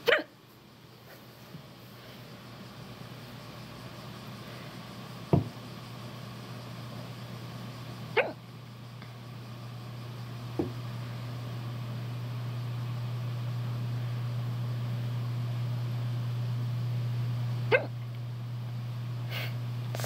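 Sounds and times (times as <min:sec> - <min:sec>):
person hiccupping: 0:00.0 - 0:00.4, 0:08.2 - 0:08.4, 0:17.7 - 0:18.0.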